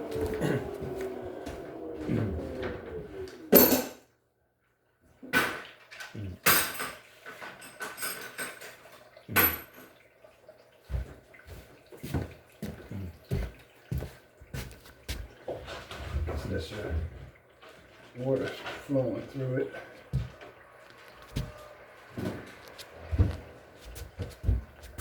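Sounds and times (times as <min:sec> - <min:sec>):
clanks and knocks around washer: 0:00.0 - 0:04.0, 0:05.2 - 0:09.9
faint water running: 0:00.0 - 0:25.0.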